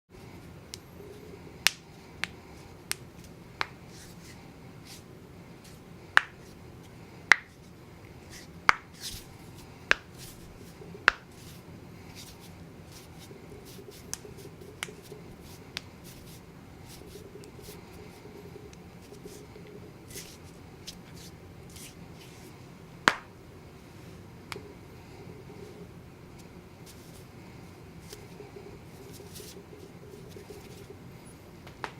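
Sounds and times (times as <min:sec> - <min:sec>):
knuckles cracking: 0:13.0 - 0:20.3.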